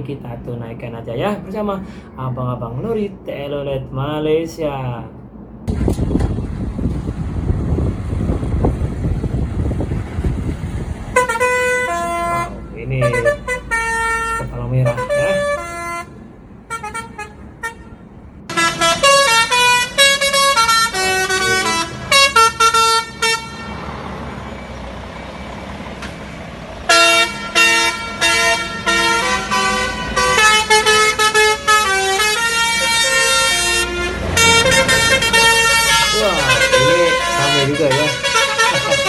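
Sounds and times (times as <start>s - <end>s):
multi-tone air horn tune: 11.2s - 23.7s, 26.9s - 39.0s.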